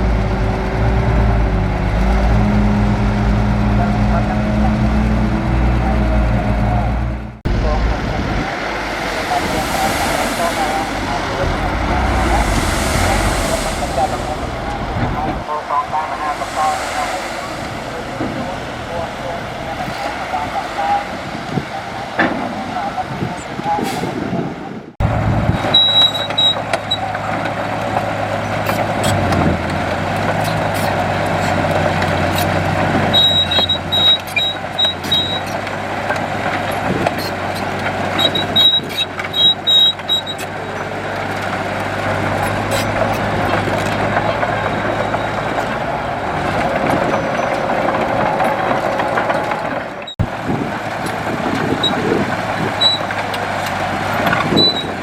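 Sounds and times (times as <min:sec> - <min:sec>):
diesel machinery running: 0:00.0 - 0:23.1.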